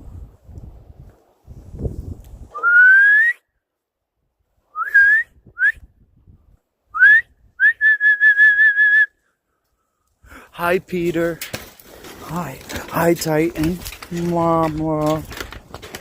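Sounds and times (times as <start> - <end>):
person whistling: 2.5 - 3.4, 4.7 - 5.9, 6.9 - 9.2.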